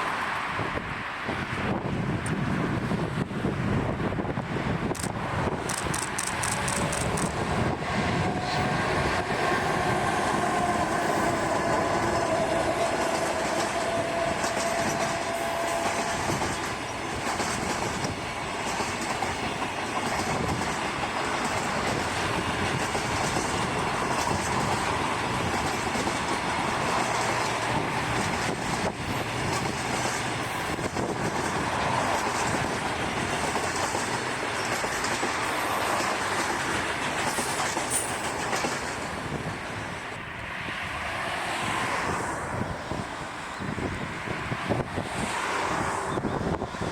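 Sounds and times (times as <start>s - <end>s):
freight train rumbling past: 0.0s - 46.9s
wheels clattering over rail joints: 10.8s - 39.4s.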